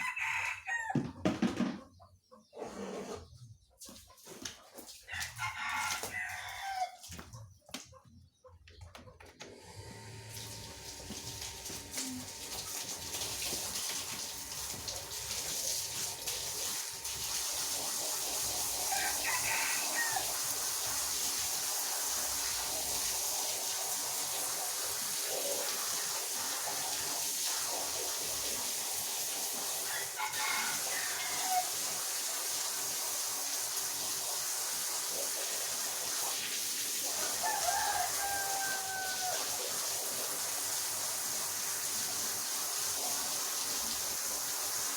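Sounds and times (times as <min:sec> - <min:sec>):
rooster crowing: 0:00.0 - 0:01.0, 0:05.1 - 0:07.1, 0:18.9 - 0:20.4, 0:29.9 - 0:31.8, 0:37.2 - 0:39.6.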